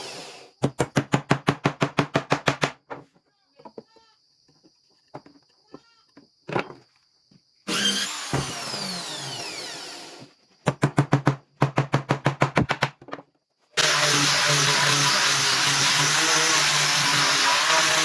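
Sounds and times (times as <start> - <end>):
power tool on wood: 7.7 - 10.3, 13.8 - 18.0.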